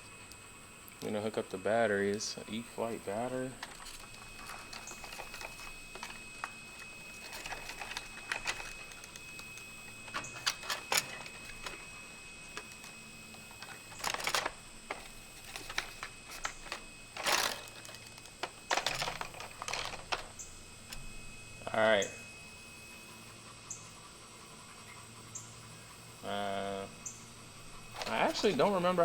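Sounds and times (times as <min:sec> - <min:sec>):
scraping rustles: 0:02.2 - 0:20.4, 0:27.8 - 0:29.0.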